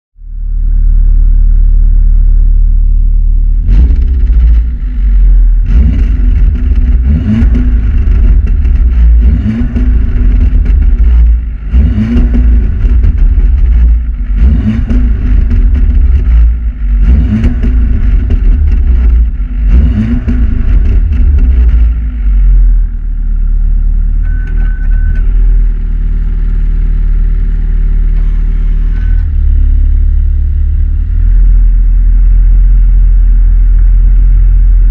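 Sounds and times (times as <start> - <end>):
car engine idling: 0.2 - 34.9
car engine revving: 0.2 - 34.9
crackling exhaust pops: 5.6 - 11.5, 12.1 - 22.1.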